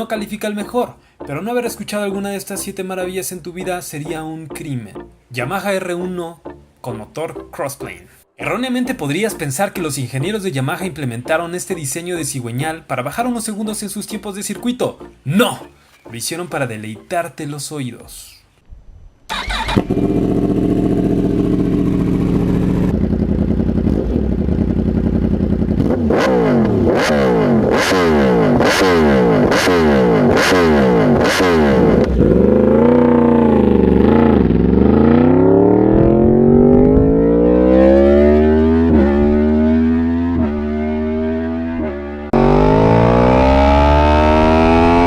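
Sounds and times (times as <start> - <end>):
motorcycle engine revving: 19.3 - 45.0.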